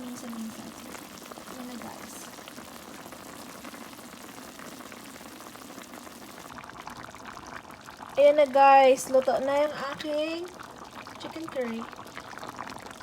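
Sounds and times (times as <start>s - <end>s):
pot bubbling and crackling: 0.0s - 13.0s.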